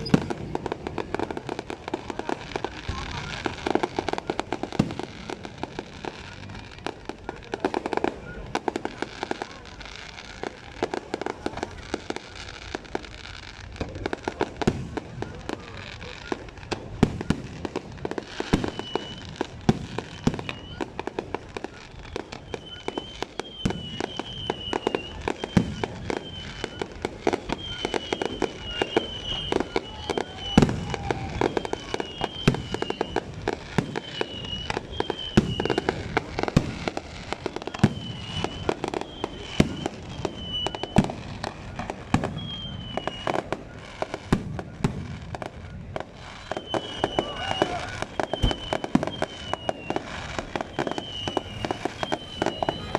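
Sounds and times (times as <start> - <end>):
fireworks bangs and pops: 0.0 - 52.9
wavering high-pitched whistle: 18.6 - 21.0, 21.8 - 36.4, 37.4 - 41.4, 42.2 - 43.5, 46.4 - 52.9.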